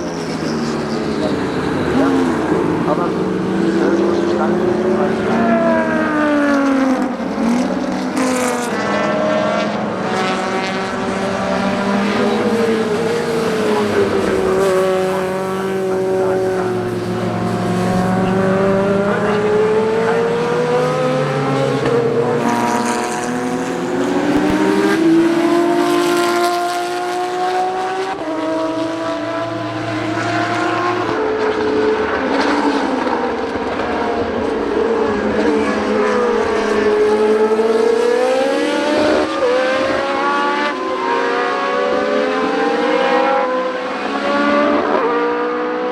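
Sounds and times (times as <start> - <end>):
racing car engines revving: 0.0 - 45.9.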